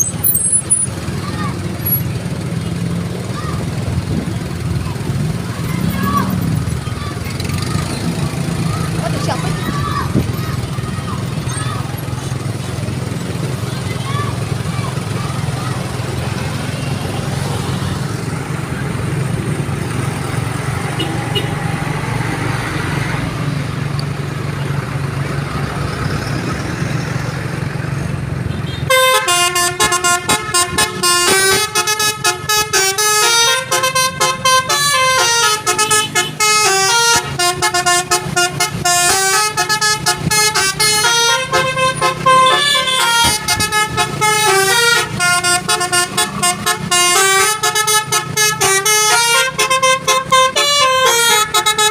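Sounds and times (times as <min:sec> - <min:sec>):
horn trumpets playing fast melody: 0:28.8 - 0:51.9.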